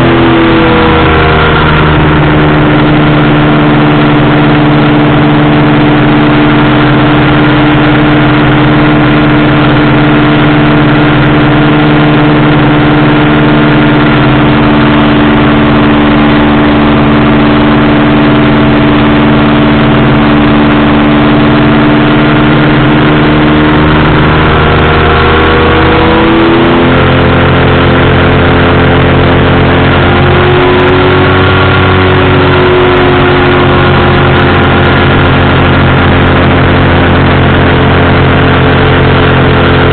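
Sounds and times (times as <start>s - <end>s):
propeller engine droning: 0.0s - 39.9s.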